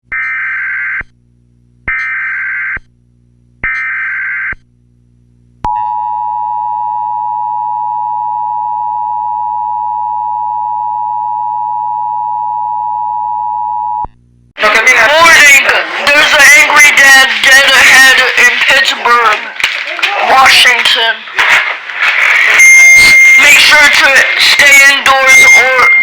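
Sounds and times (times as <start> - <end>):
steady attention tone: 20.2 - 26.0.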